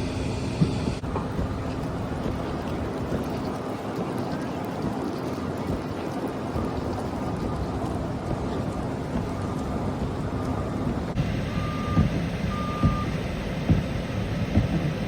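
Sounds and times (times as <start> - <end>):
low engine rumble: 0.0 - 15.0
truck reversing alarm beeping: 8.8 - 15.0.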